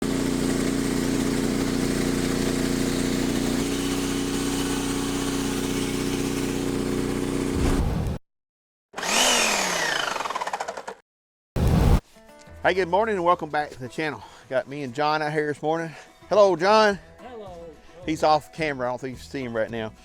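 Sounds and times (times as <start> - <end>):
engine running: 0.0 - 8.2, 9.0 - 11.0.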